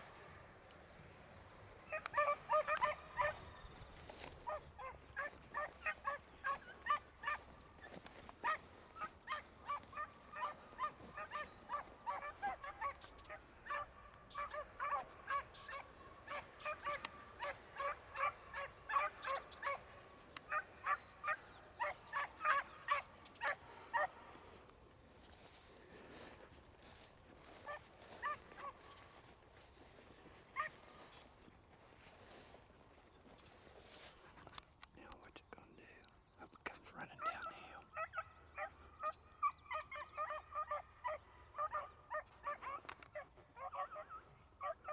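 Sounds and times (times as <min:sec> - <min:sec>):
dogs baying: 0:01.9 - 0:24.7, 0:25.7 - 0:32.2, 0:38.0 - 0:44.9.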